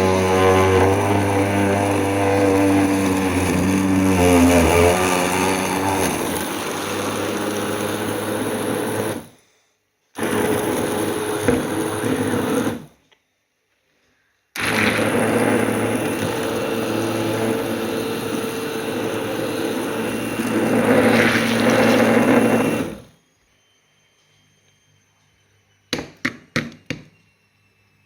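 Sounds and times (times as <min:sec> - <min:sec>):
blender motor running: 0:00.0 - 0:09.4, 0:10.2 - 0:13.0, 0:14.6 - 0:23.2.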